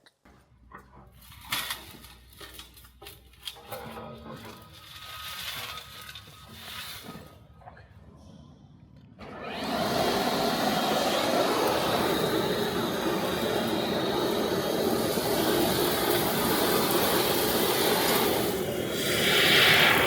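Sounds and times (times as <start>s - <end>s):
blower rushing air: 9.2s - 20.0s.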